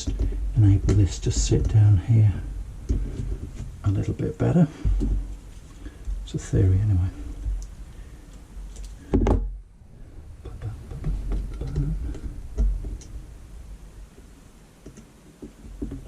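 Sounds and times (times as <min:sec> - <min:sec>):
light clicks and taps: 0:07.4 - 0:09.0, 0:14.2 - 0:16.0.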